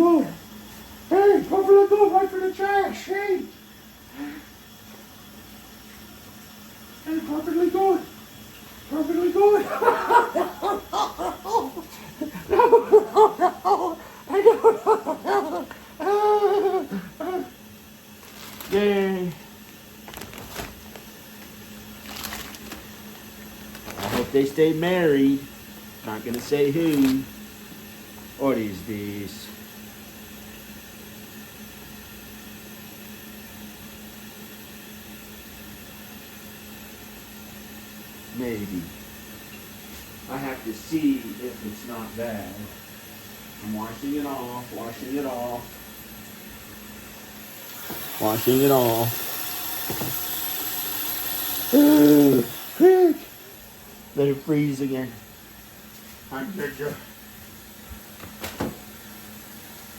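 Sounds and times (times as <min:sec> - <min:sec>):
low machine hum with hiss: 0:00.0 - 0:59.9
person laughing: 0:09.4 - 0:17.6.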